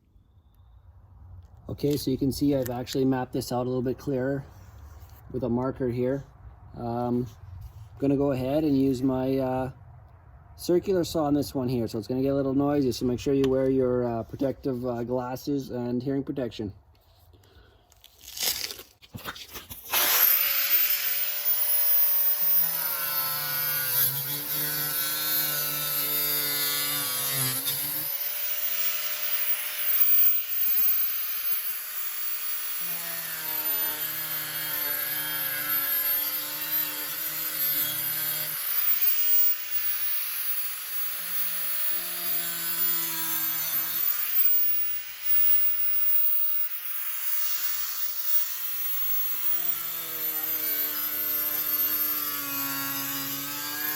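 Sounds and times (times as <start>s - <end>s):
electric saw cutting plastic: 19.7s - 53.9s.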